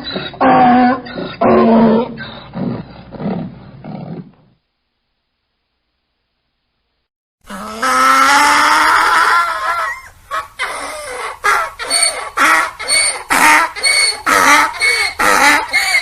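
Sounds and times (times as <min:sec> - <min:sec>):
donkey braying: 0:00.0 - 0:03.4, 0:07.5 - 0:16.0.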